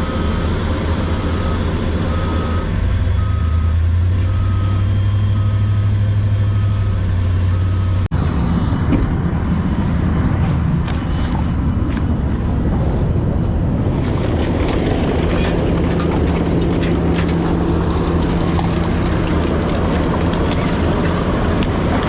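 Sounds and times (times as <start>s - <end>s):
heavy vehicle engine running: 0.0s - 22.0s
metallic clanks and rattles: 14.4s - 21.7s.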